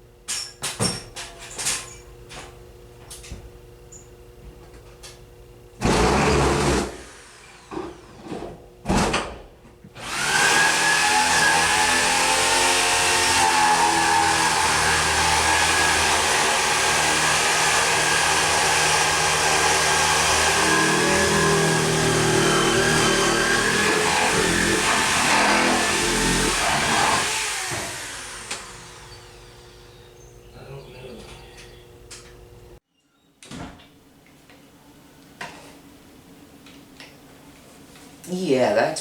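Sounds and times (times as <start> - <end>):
electric motor whirring hum: 10.0 - 30.5.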